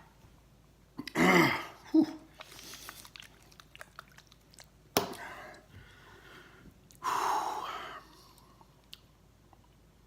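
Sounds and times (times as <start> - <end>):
wet lip smacks: 2.3 - 5.6
man breathing: 5.2 - 8.6.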